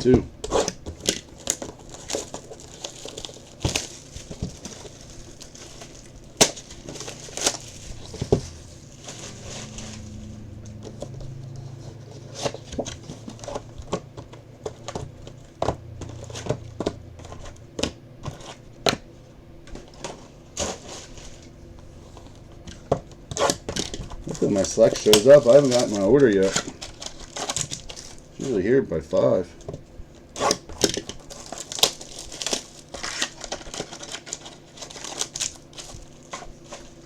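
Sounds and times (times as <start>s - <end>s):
low steady hum: 0.0s - 37.0s
plastic wrap tearing and crumpling: 0.5s - 11.1s, 23.3s - 28.6s, 30.3s - 37.0s.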